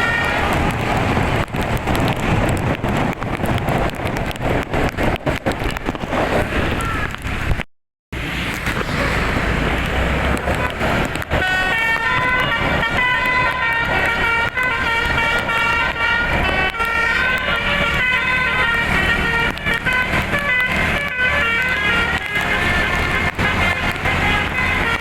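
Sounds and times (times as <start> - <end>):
rushing noise: 0.0 - 25.0
bus horn playing a tune: 10.5 - 25.0.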